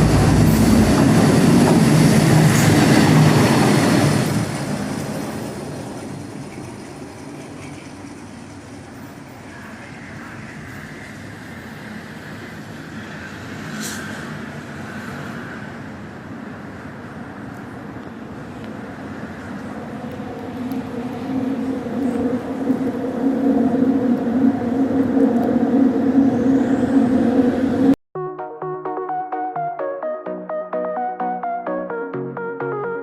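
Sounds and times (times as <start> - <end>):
locomotive engine running loud: 0.0 - 13.4
train wheels rolling on rails: 0.0 - 28.0.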